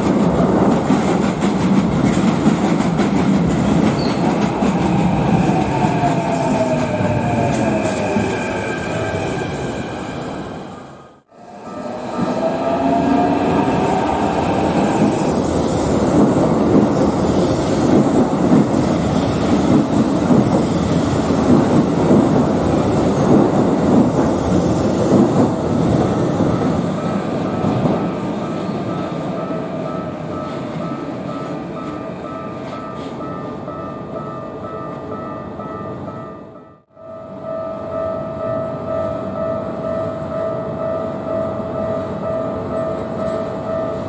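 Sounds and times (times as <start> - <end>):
level crossing warning bell: 28.4 - 44.0.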